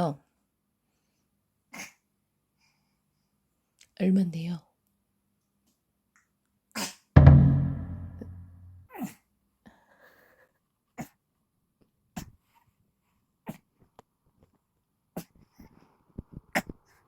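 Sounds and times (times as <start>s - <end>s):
loud ringing thump: 7.2s - 8.7s.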